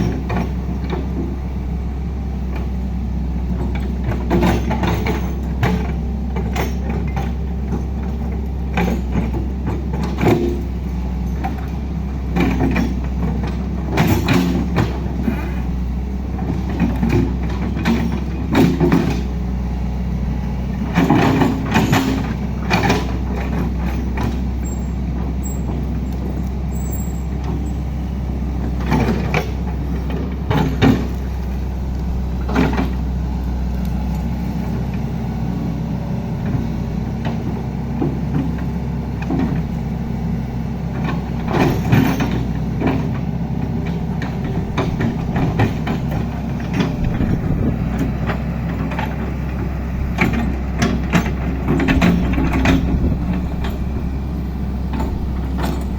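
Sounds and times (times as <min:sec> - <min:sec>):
large diesel engine running: 0:00.0 - 0:55.9
short knocks and clanks: 0:03.5 - 0:19.6, 0:20.7 - 0:27.8, 0:28.6 - 0:31.5, 0:40.9 - 0:55.9.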